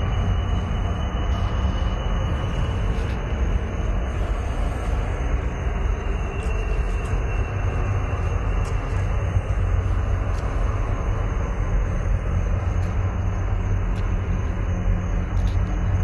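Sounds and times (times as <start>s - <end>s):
low rumbling drone: 0.0s - 16.0s.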